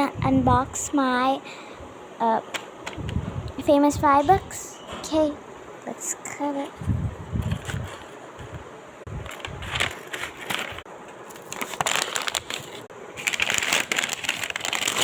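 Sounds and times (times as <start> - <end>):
cardboard scraping and tearing: 9.3 - 10.8, 11.4 - 15.0.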